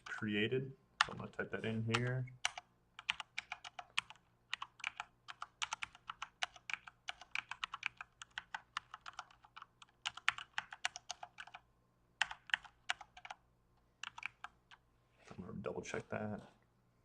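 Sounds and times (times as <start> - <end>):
keyboard typing: 1.0 - 11.6, 12.2 - 13.4, 14.0 - 14.8.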